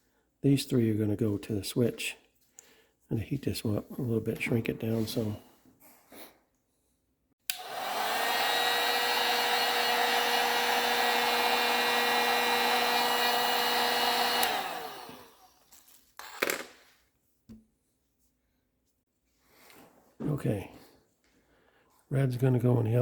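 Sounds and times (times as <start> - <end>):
heat gun switch click: 7.5 - 8.0, 14.3 - 14.7
heat gun fan running: 7.5 - 15.5.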